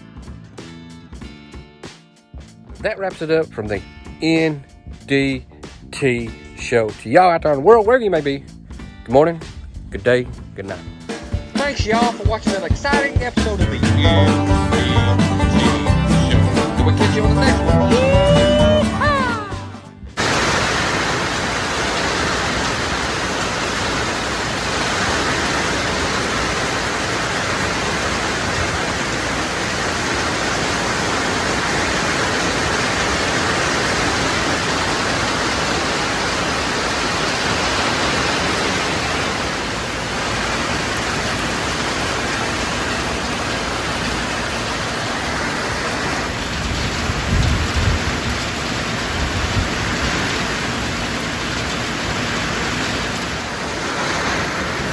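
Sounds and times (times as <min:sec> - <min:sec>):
rain falling steadily: 0:20.2 - 0:54.9
low rumble: 0:44.2 - 0:50.2.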